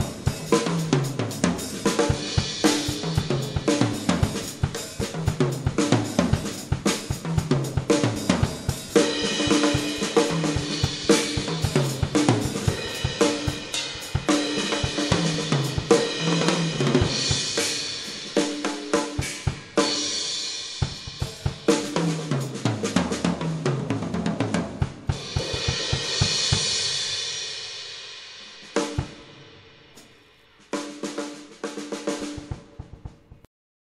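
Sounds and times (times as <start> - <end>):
drum kit playing: 0.0 - 33.5
crashing cymbals: 8.2 - 21.7, 25.1 - 30.0.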